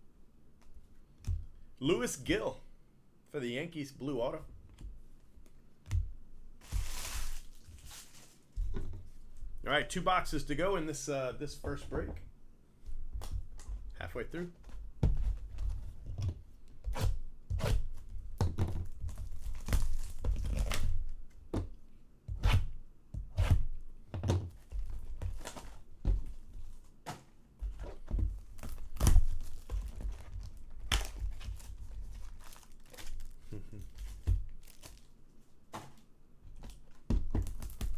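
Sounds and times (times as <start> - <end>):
plastic wrap tearing and crinkling: 6.6 - 8.6, 18.8 - 21.0, 28.4 - 36.0, 36.7 - 37.9
cardboard thunks and snaps: 27.0 - 35.0, 35.7 - 37.9.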